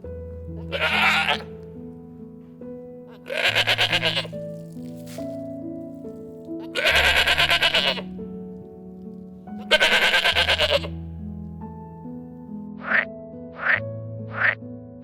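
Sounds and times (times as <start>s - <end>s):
background music: 0.0s - 15.0s
sheep bleating: 0.6s - 1.5s, 3.1s - 4.4s, 6.6s - 8.1s, 9.6s - 10.9s.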